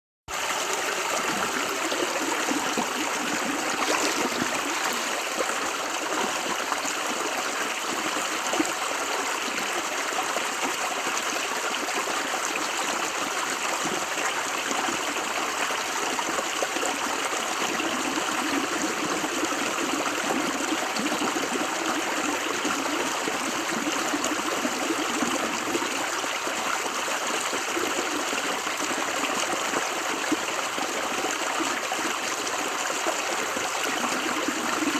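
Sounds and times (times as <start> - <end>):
river water flowing over rocks: 0.3 - 17.6.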